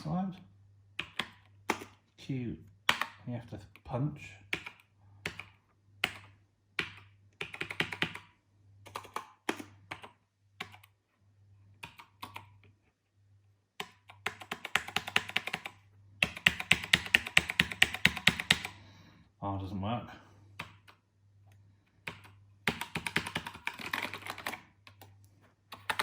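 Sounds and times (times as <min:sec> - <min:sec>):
keyboard keys clicking: 0:01.0 - 0:02.0, 0:04.5 - 0:08.3, 0:08.9 - 0:11.0, 0:11.8 - 0:12.6, 0:13.8 - 0:18.8, 0:20.6 - 0:21.0, 0:22.0 - 0:26.0.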